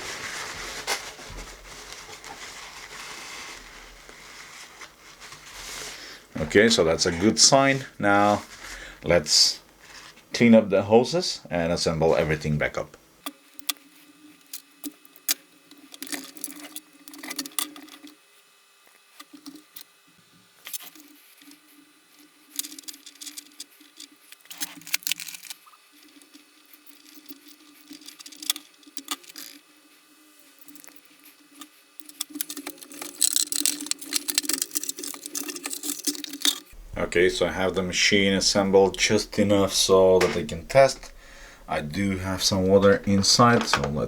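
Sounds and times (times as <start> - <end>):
faint steady hum: 0.0 - 44.0
plastic parts clicking and rattling: 22.5 - 29.6, 30.6 - 36.8, 43.4 - 44.0.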